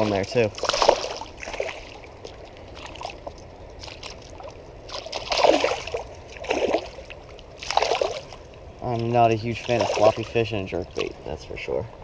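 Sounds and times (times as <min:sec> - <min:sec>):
creek water washing: 0:00.0 - 0:12.0
fish splashing at water surface: 0:00.5 - 0:08.4.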